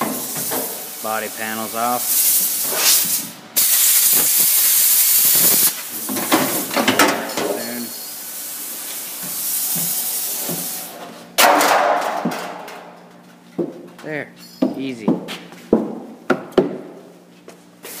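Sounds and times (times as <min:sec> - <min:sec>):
power cutter hissing through metal: 0:00.0 - 0:11.0.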